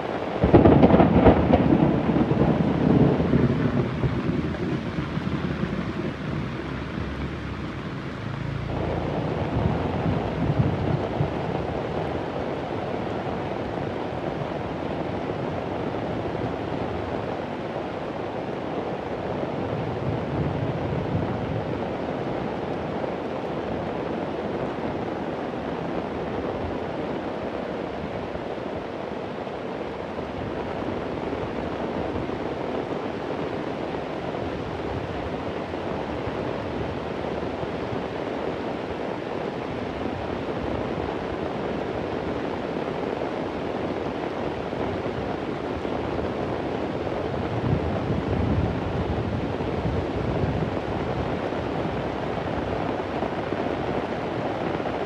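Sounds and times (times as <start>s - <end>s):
heavy rain falling: 0.0s - 55.0s
thunder rumble: 0.3s - 17.6s, 18.5s - 23.3s, 43.4s - 55.0s.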